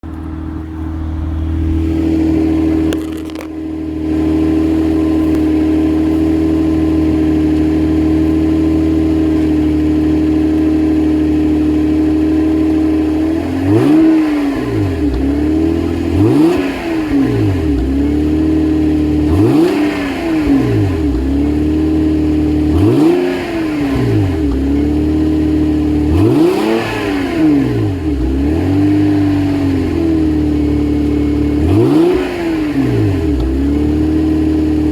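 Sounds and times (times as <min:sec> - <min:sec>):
car engine idling and revving: 0:00.0 - 0:34.9.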